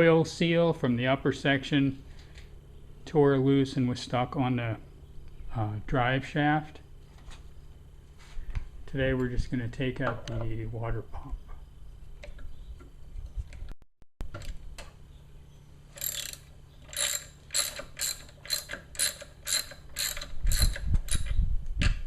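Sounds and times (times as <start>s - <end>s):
ratchet wrench clicking: 15.9s - 21.4s.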